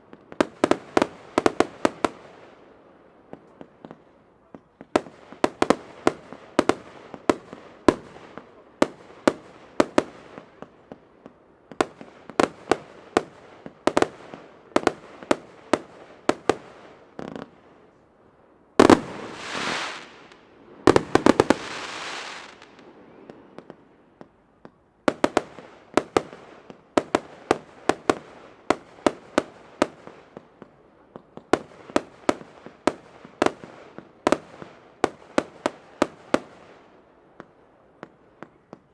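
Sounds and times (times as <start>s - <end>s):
fireworks hissing and crackling: 18.8s - 23.8s.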